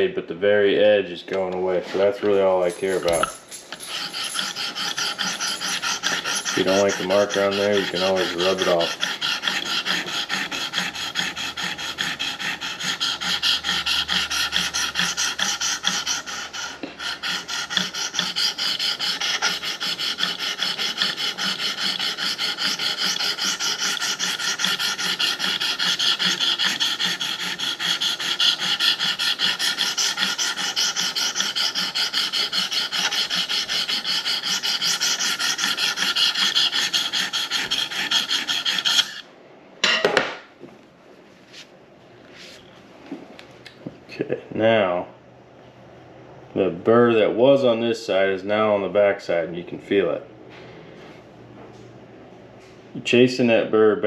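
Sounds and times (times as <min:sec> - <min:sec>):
sharpening stone scraping knife: 0:02.6 - 0:39.2.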